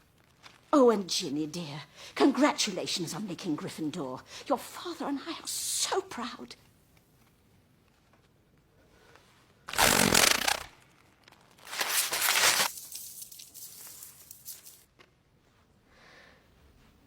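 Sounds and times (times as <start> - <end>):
paper crackling and rustling: 0.0 - 0.7, 9.7 - 14.9
loud rasping raspberry: 9.7 - 10.7
paper tearing: 9.7 - 14.8.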